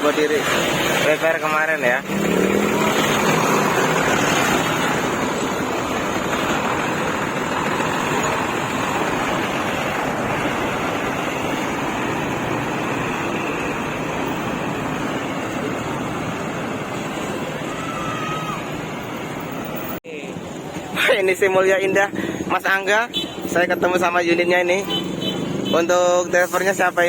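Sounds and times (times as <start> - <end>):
bus driving past: 2.0 - 20.0.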